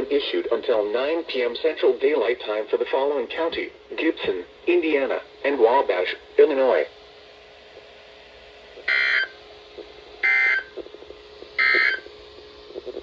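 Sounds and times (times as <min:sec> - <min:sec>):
buzzy digital data bursts: 0:08.8 - 0:09.4, 0:10.2 - 0:13.0.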